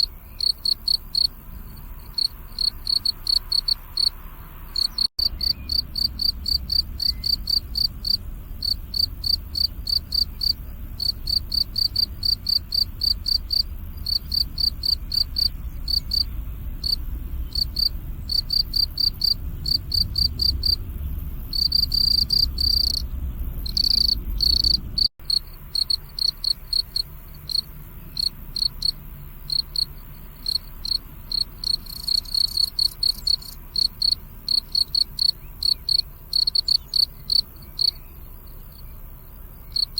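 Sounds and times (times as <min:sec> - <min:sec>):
crickets chirping: 0:00.0 - 0:39.9
low rumble: 0:03.9 - 0:26.2.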